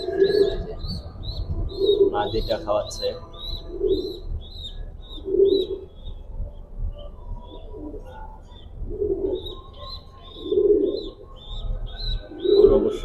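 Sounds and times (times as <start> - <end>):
pigeon cooing: 0.0 - 6.0, 7.4 - 13.0.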